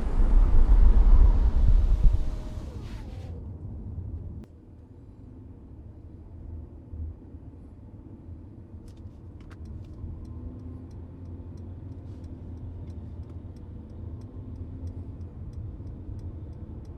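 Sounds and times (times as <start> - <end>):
car cabin rumble: 0.0 - 4.4
turn signal ticking: 9.4 - 16.9.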